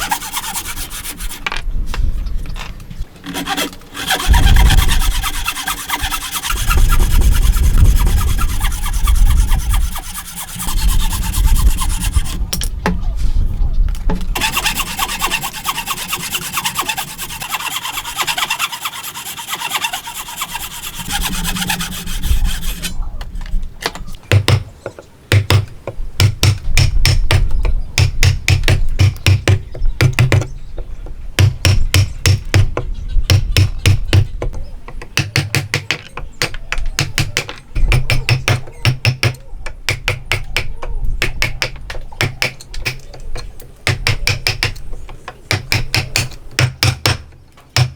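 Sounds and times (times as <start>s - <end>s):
hand saw cutting wood: 0.0s - 1.6s, 3.2s - 12.4s, 14.4s - 23.0s.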